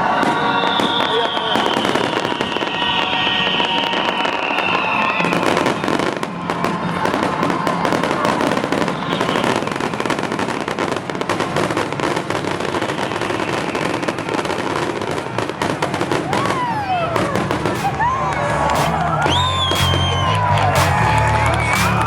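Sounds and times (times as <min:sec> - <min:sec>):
fireworks crackling: 0:00.0 - 0:22.0
music: 0:02.5 - 0:08.8, 0:16.8 - 0:22.0.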